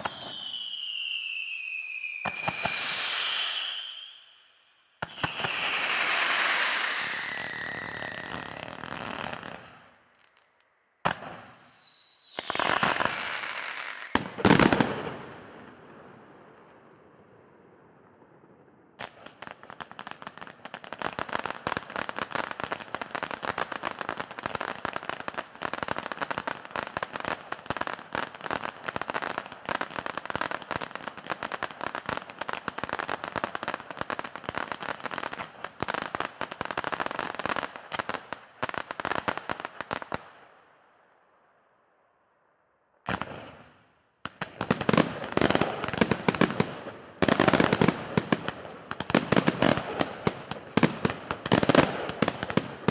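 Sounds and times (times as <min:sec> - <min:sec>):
fireworks bangs crackling: 0:05.0 - 0:15.4, 0:44.3 - 0:52.9.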